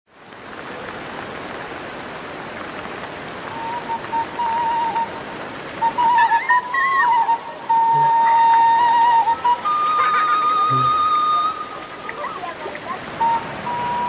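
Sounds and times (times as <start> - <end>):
steady rain: 0.1 - 14.0
thin high wavering melody: 5.8 - 12.6.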